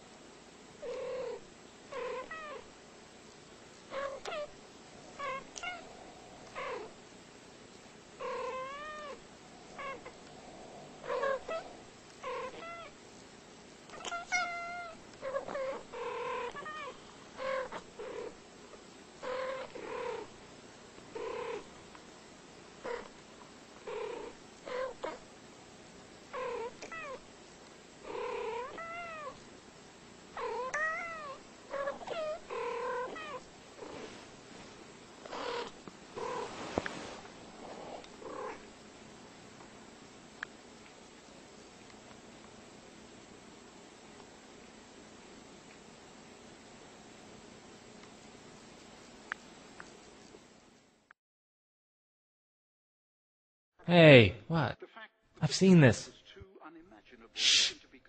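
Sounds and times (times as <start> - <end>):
cats meowing: 8.3 - 9.2, 11.0 - 13.0, 13.9 - 17.9, 28.2 - 29.4, 30.4 - 33.4.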